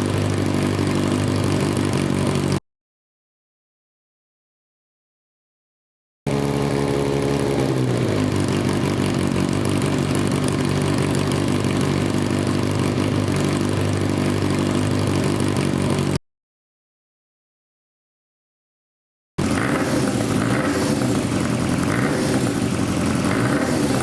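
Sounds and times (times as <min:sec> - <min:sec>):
motorcycle engine idling: 0:00.0 - 0:02.6, 0:06.3 - 0:16.2, 0:19.4 - 0:24.0.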